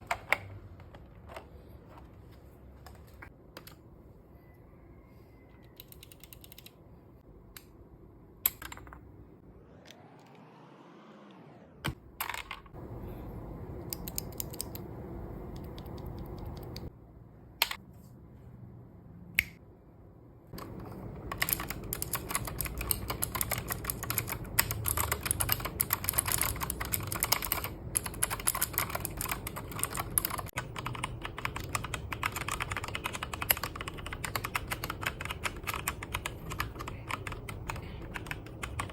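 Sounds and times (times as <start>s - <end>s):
mechanical keyboard typing: 5.7s - 6.8s, 13.8s - 16.9s, 20.6s - 38.9s.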